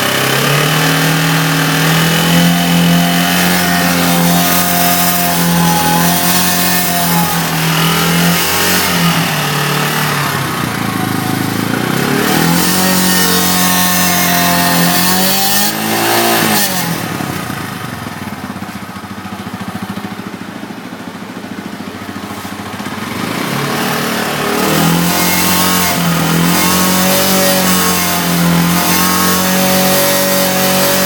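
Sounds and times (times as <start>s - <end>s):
motorcycle engine revving: 0.0s - 31.0s.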